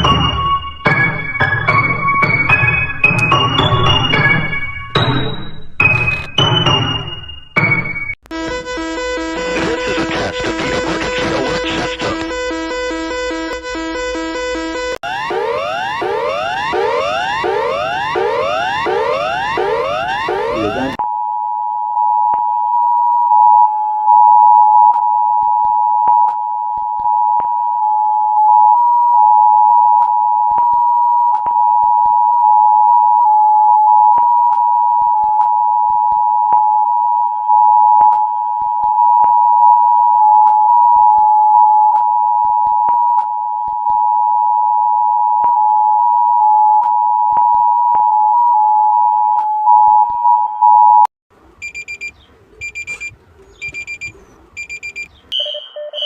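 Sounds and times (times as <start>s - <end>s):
rising electronic pitch sweeps: 8.3s - 21.0s
alert attention tone: 12.3s - 21.0s, 51.7s - 56.0s
scattered clicks: 51.6s - 55.1s.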